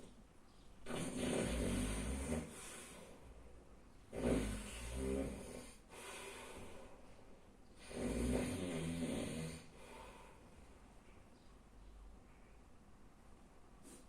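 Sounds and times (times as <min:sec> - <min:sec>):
person snoring loudly: 0:00.9 - 0:02.8, 0:04.1 - 0:05.9, 0:07.8 - 0:09.8
quiet breath: 0:02.4 - 0:03.7, 0:04.6 - 0:08.0, 0:09.4 - 0:11.4, 0:13.8 - 0:14.0.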